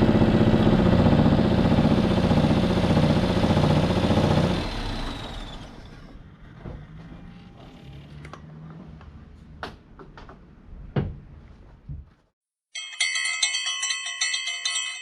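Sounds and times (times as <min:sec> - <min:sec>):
chiming bell tune: 0:12.7 - 0:15.0.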